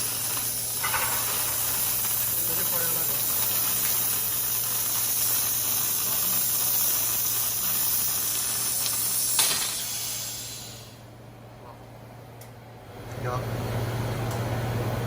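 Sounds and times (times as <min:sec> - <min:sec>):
loud hiss: 0:00.0 - 0:11.0.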